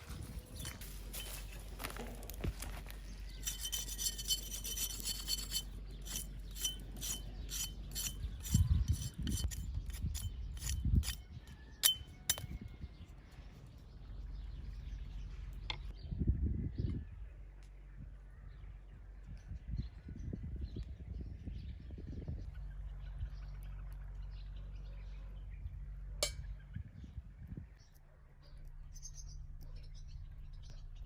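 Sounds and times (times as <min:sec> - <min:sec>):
rubbing and scraping: 0:00.0 - 0:12.5.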